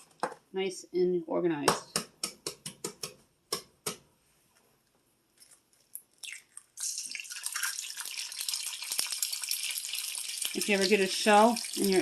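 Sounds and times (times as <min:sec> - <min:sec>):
egg sizzling in a frying pan: 0:06.2 - 0:12.0.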